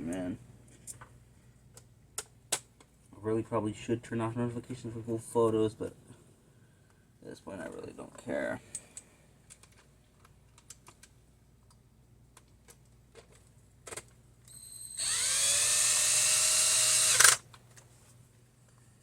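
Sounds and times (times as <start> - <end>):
cordless drill whining: 14.5 - 17.4.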